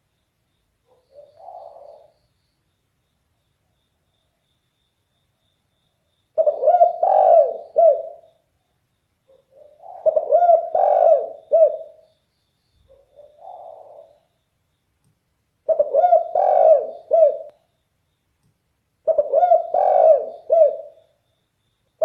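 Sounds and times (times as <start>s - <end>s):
dove cooing: 0.9s - 2.1s, 6.4s - 8.3s, 9.3s - 12.0s, 12.9s - 14.3s, 15.6s - 17.6s, 19.0s - 21.0s.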